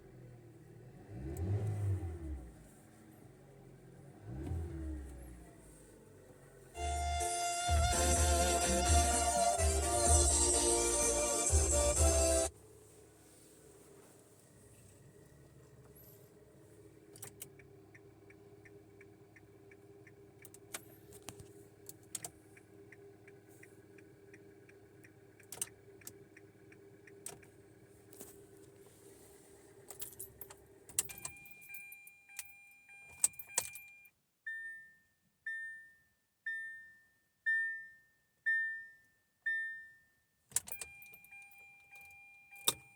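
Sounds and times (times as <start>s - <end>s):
car engine idling: 0.0s - 31.0s
turn signal ticking: 15.0s - 28.9s
keys jingling: 29.8s - 32.0s.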